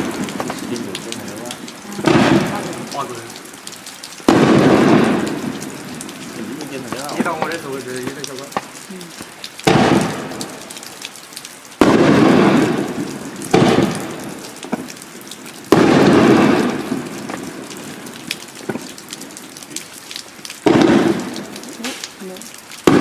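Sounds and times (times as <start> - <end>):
crackling sizzling hiss: 0.0 - 23.0
firework bursts: 2.0 - 2.8, 4.3 - 5.5, 9.6 - 10.6, 11.8 - 14.9, 15.7 - 17.6, 20.6 - 22.0.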